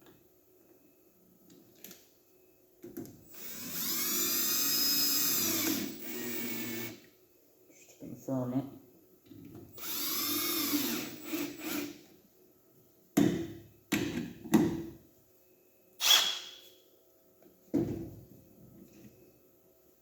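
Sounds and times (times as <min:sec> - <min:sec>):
cordless drill driving screw: 0:03.3 - 0:07.0, 0:09.7 - 0:12.0.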